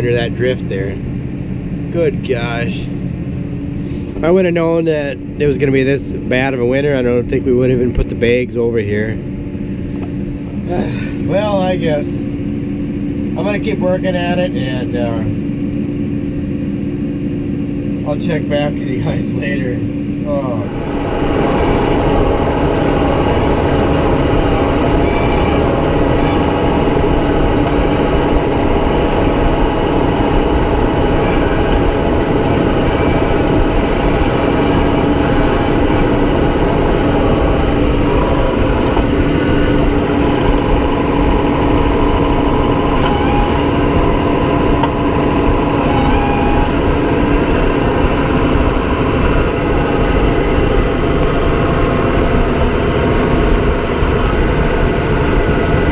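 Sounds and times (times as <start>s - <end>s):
tractor engine running under load: 20.7s - 55.9s.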